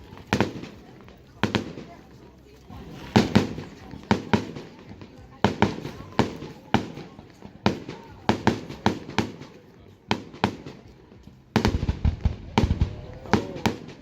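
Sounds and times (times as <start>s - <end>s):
fireworks bursting with sharp bangs: 0.0s - 14.0s
deep fireworks booms: 2.7s - 10.9s, 11.5s - 14.0s.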